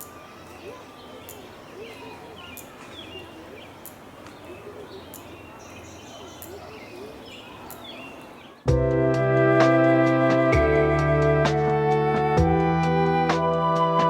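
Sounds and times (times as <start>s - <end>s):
distant voices murmuring: 0.0s - 8.7s
small birds chirping: 0.0s - 8.7s
music: 8.7s - 14.0s.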